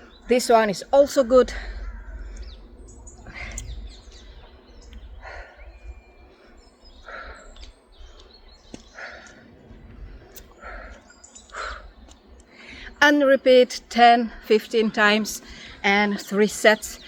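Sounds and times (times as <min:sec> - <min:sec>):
faint bird chirps: 0:00.0 - 0:13.0
wind rumble on microphone: 0:00.0 - 0:13.0.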